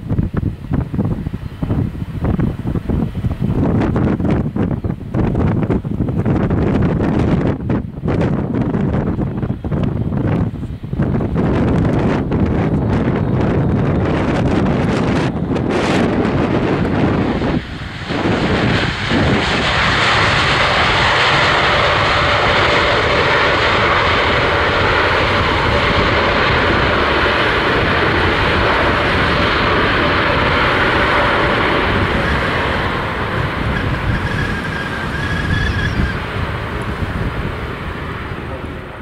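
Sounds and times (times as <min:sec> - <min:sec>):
jet engine roar: 0:00.0 - 0:39.0.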